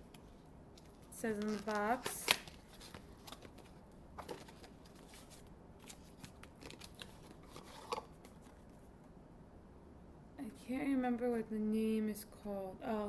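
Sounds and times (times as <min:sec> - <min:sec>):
box clicks and scrapes: 0:01.4 - 0:08.5.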